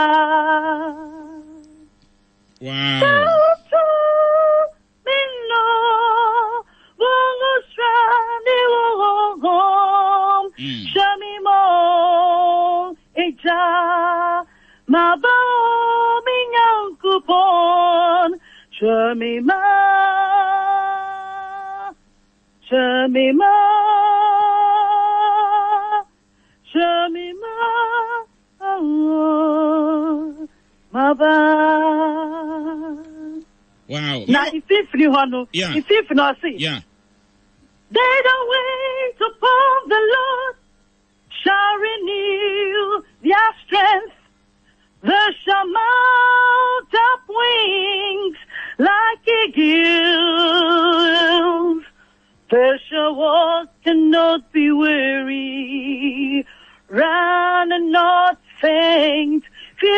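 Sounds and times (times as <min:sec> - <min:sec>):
woman singing unaccompanied: 0:00.0 - 0:02.0, 0:02.9 - 0:22.0, 0:22.6 - 0:33.6, 0:34.3 - 0:36.7, 0:37.9 - 0:40.7, 0:41.3 - 0:44.3, 0:45.0 - 0:59.9
short breaths: 0:06.7 - 0:07.0, 0:14.5 - 0:14.9, 0:18.4 - 0:18.7, 0:26.3 - 0:26.6, 0:48.4 - 0:48.8, 0:51.9 - 0:52.4, 0:56.4 - 0:56.9, 0:59.4 - 0:59.8.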